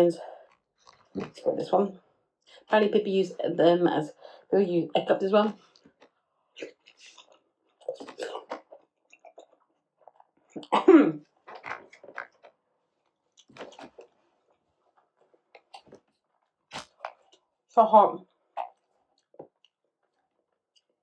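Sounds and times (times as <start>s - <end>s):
person chewing dumplings: 0.3s - 1.4s, 5.6s - 17.7s, 18.3s - 21.0s.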